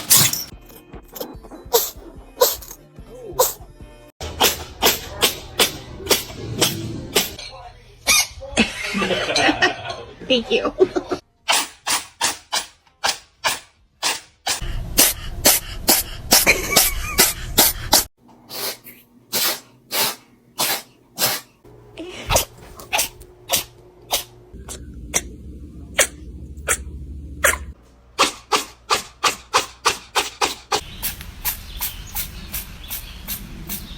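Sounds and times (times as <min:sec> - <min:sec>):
cat sneezing: 0:01.7 - 0:02.8, 0:03.4 - 0:03.6, 0:13.4 - 0:21.6, 0:22.3 - 0:24.3, 0:26.0 - 0:30.6.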